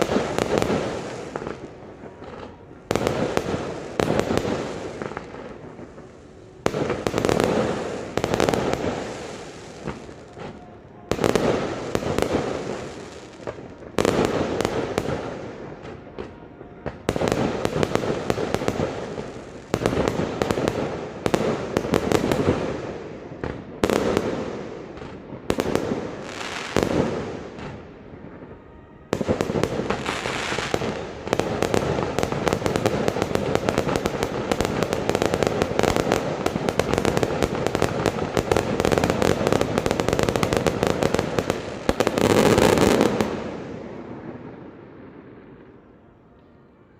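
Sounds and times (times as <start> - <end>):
fireworks crackling bangs: 0.0 - 45.8.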